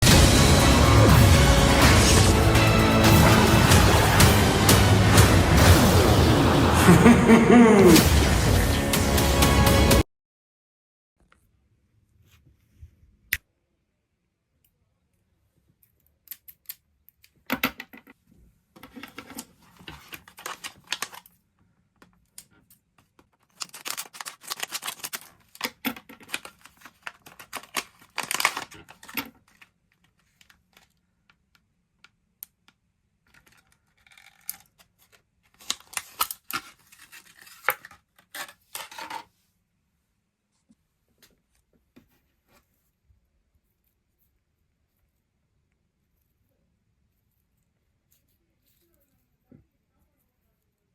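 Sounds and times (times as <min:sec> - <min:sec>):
packaging crackling and tearing: 0:18.9 - 0:21.4, 0:23.3 - 0:31.0, 0:33.3 - 0:39.2.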